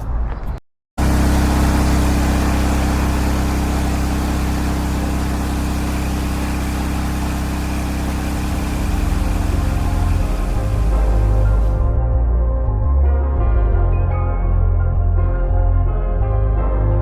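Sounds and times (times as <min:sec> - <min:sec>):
constant hiss: 0:01.0 - 0:11.8
pressure washer engine running: 0:01.0 - 0:11.9.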